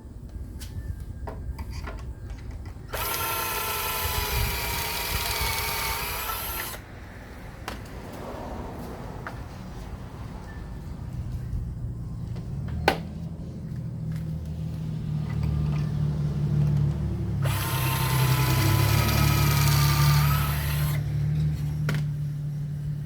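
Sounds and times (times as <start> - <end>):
power drill motor humming: 2.9 - 6.8, 17.4 - 21.1
drill bit cutting into wood: 3.0 - 6.8, 17.4 - 21.0.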